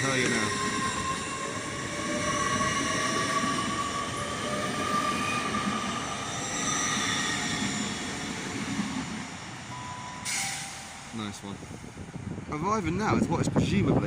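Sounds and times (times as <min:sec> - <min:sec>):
train drive whine: 0:00.0 - 0:13.0.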